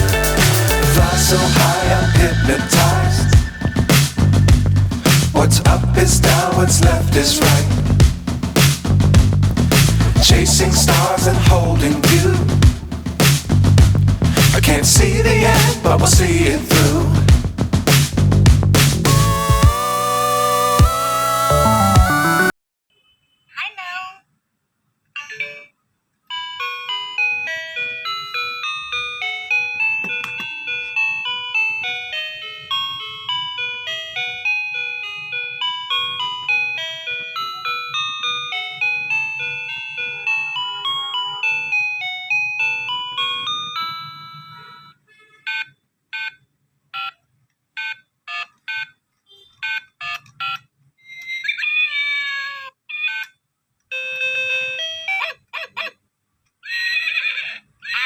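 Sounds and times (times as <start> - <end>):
electronic beeping melody: 0.0 - 5.1, 19.1 - 22.5.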